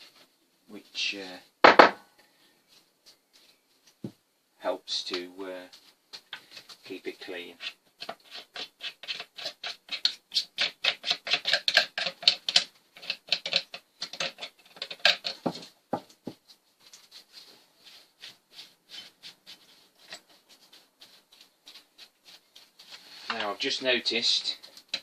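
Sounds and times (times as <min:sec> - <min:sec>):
rapid scratching scrubbing strokes: 0:06.8 - 0:14.9, 0:17.2 - 0:25.0.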